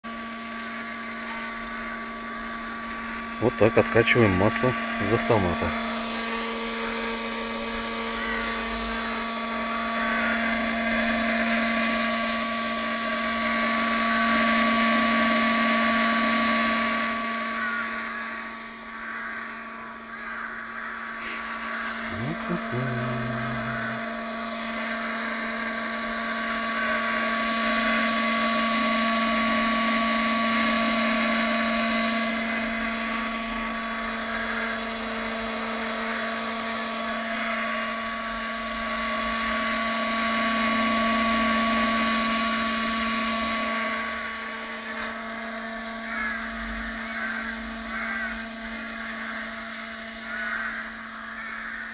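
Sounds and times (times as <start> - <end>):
small pump humming: 0.1 - 51.8.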